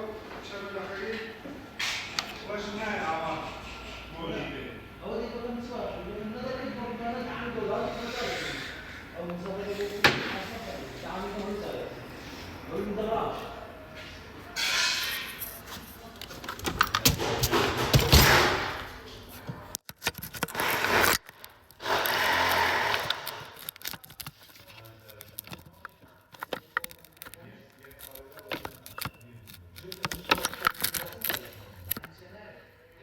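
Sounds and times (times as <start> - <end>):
hand tools clicking and knocking: 16.2 - 18.8.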